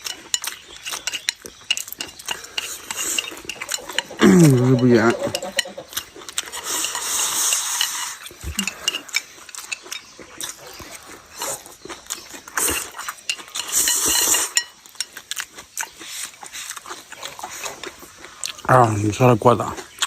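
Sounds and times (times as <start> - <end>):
chopsticks clinking on a bowl: 0.0 - 16.0
person chewing: 0.0 - 18.7
person slurping: 2.2 - 9.6, 12.6 - 14.7.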